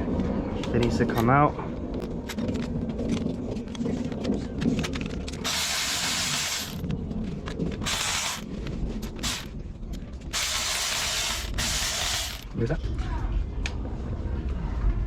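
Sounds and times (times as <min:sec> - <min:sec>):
tools and engine parts clicking: 0:02.0 - 0:12.6
hissing bursts: 0:05.4 - 0:06.8, 0:07.8 - 0:08.5, 0:09.2 - 0:09.5, 0:10.3 - 0:12.4.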